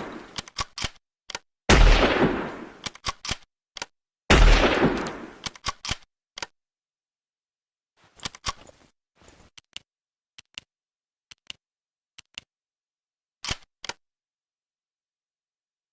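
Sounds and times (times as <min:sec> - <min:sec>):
rifle bolt clicks and rattle: 0:00.0 - 0:04.0, 0:04.6 - 0:06.6, 0:08.2 - 0:08.8, 0:13.4 - 0:14.0
rifle shot boom: 0:01.7 - 0:02.8, 0:04.3 - 0:05.4.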